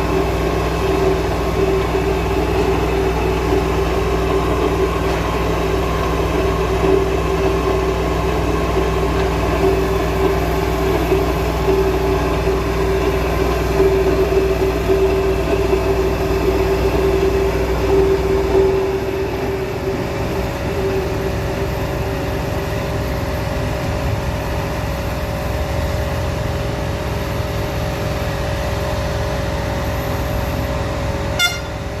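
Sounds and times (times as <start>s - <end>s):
heavy machinery droning: 0.0s - 32.0s
short sharp sound: 31.4s - 31.8s.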